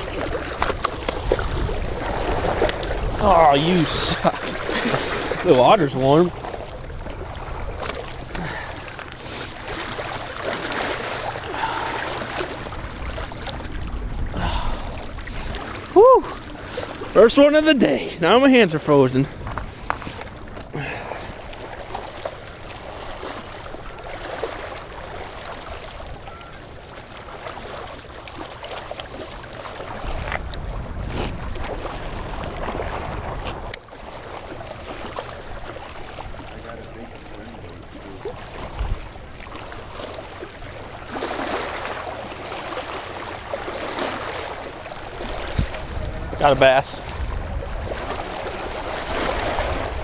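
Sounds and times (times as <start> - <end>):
wind buffeting microphone: 0.0 - 8.9, 11.5 - 17.3, 19.2 - 22.2, 29.8 - 37.1, 37.8 - 39.4, 44.9 - 50.0.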